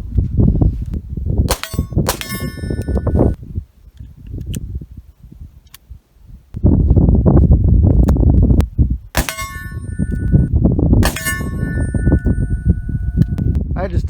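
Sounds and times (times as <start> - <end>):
pistol gunshot: 1.5 - 3.1, 9.2 - 10.3, 11.0 - 12.0
bullet ringing on steel target: 1.5 - 3.4, 9.2 - 13.4.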